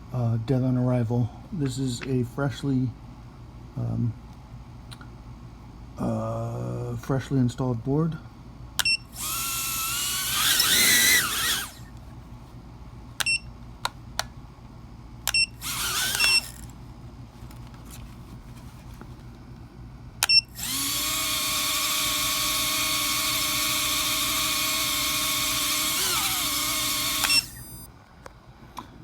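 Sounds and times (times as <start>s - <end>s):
drone motors whining: 9.2s - 11.9s, 15.6s - 16.7s, 20.3s - 27.9s.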